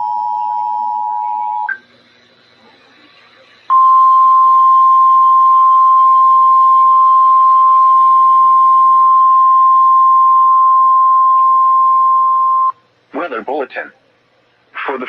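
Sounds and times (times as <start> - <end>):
steady high alarm tone: 0.0 - 1.8, 3.7 - 12.8.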